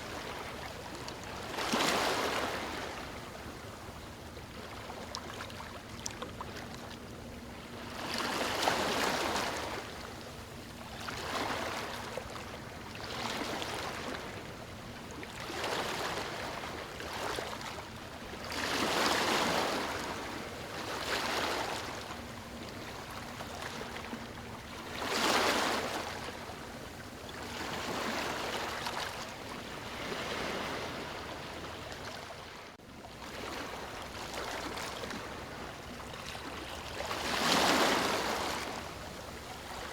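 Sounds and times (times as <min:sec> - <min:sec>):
small waves splashing on beach: 0:00.0 - 0:03.5, 0:11.0 - 0:14.5, 0:15.3 - 0:39.9.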